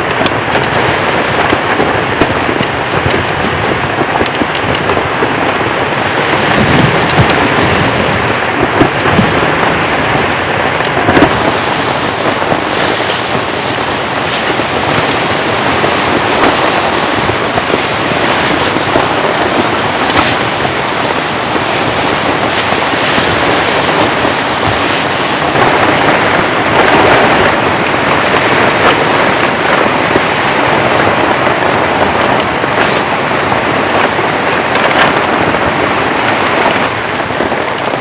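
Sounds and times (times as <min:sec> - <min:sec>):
heavy rain falling: 0:00.0 - 0:38.0.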